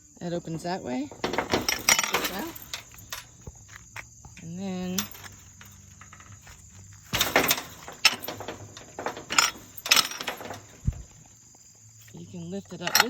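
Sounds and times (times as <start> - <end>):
gate latch clacking and rattling: 0.2 - 11.4, 12.6 - 13.0
gate knocks: 0.4 - 3.7, 4.3 - 11.3.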